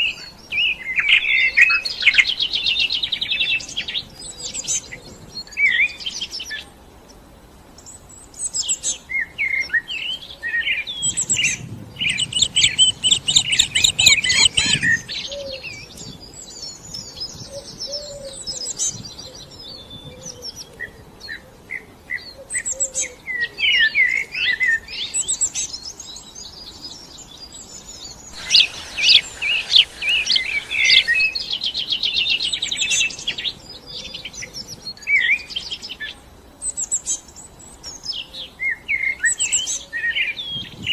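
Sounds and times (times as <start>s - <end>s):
songbirds chirping and trilling: 0.0s - 40.9s.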